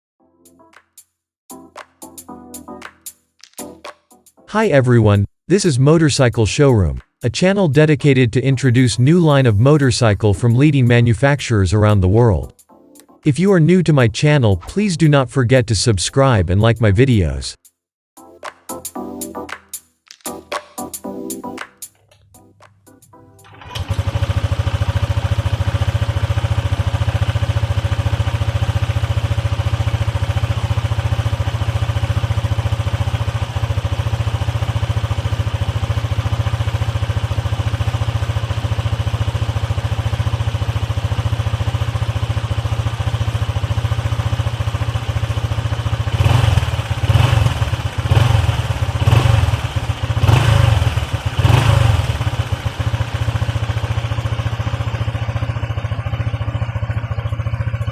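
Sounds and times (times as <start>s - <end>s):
scooter engine idling: 23.4s - 57.9s.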